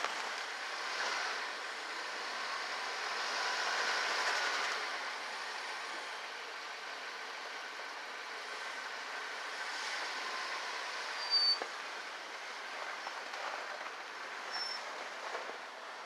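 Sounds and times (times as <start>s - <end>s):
car driving on ice and snow: 0.0s - 16.0s
short high squeak: 11.2s - 11.6s, 14.5s - 14.9s.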